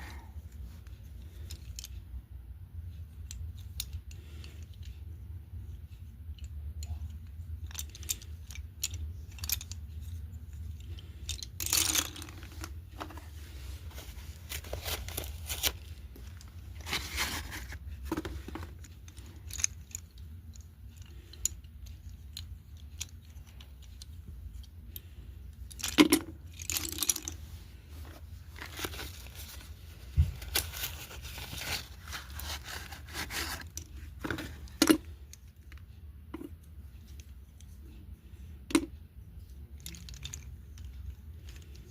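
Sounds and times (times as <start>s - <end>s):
slate pencils crunching and snapping: 7.6s - 9.9s.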